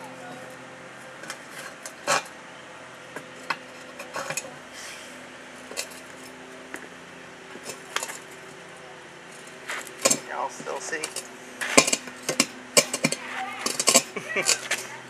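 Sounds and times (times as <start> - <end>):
metal bar clanking on wheel rim: 1.2 - 2.3, 3.1 - 4.5, 9.7 - 14.9.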